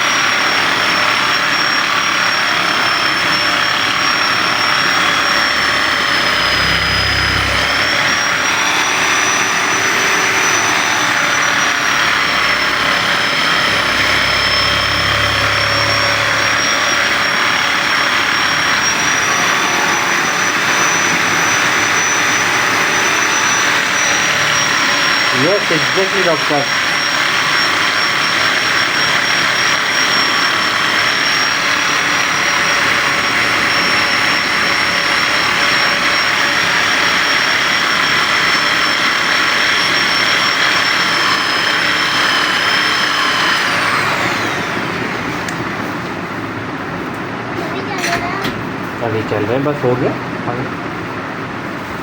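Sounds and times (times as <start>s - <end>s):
small electric motor whining: 0.0s - 48.4s
low hum: 3.8s - 27.4s.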